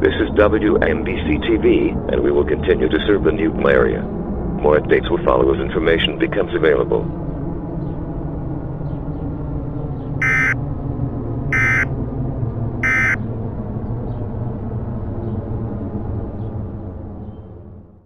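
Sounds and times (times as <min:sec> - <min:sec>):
low steady drone: 0:00.0 - 0:18.0
buzzing data bursts: 0:10.2 - 0:10.6, 0:11.6 - 0:11.9, 0:12.8 - 0:13.2.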